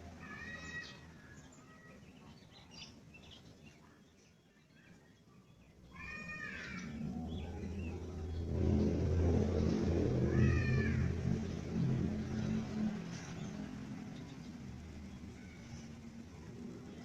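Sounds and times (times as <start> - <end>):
vehicle engine rumble: 5.9 - 17.0.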